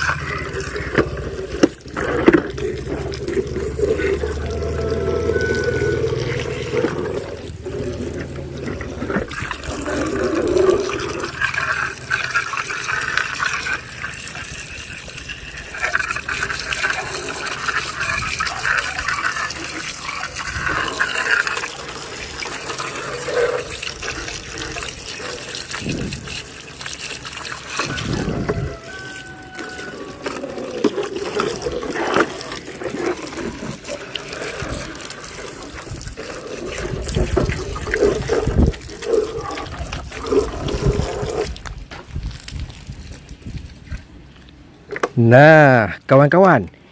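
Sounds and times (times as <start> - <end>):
water running and splashing: 0.0 - 44.6.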